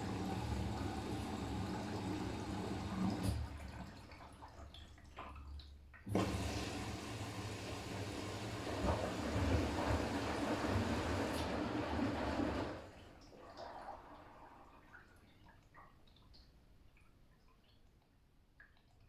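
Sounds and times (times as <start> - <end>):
washing machine drum turning: 7.9 - 12.8.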